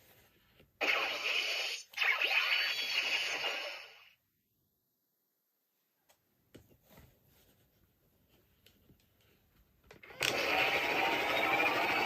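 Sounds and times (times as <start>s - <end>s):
toy electronic whoosh effect: 0.8s - 4.1s.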